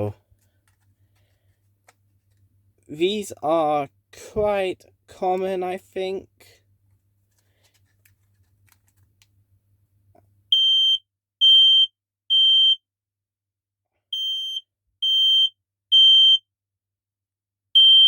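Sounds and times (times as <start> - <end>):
smoke alarm beeps: 10.5 - 12.8, 14.2 - 16.4, 17.8 - 18.0.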